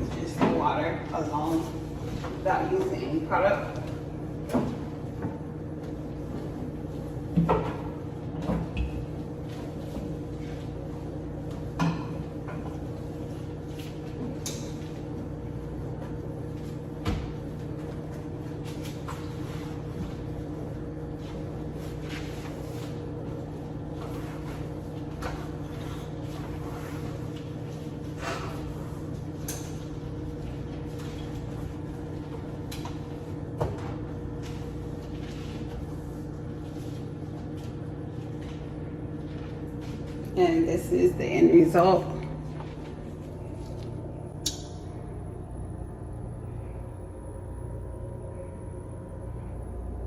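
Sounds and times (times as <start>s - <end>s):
steady low hum: 0.0s - 50.0s.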